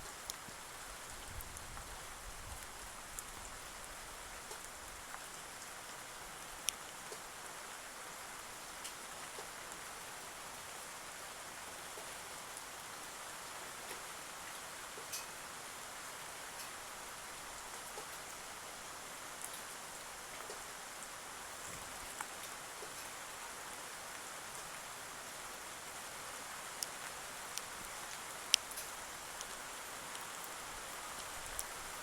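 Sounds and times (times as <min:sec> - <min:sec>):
steady hiss: 0:00.0 - 0:32.0.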